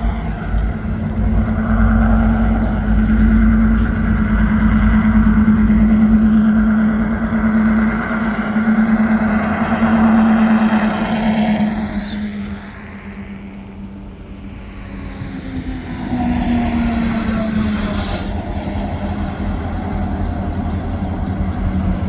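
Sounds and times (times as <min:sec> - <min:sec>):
engine droning hum: 0:00.0 - 0:22.0.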